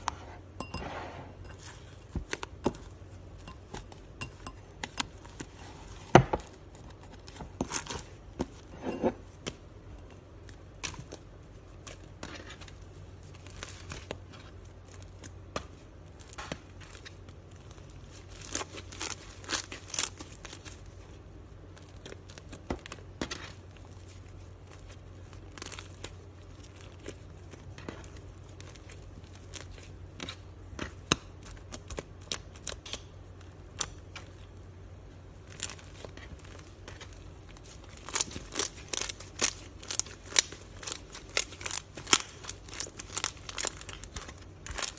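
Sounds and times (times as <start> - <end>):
slime popping and crackling: 35.3 - 44.9.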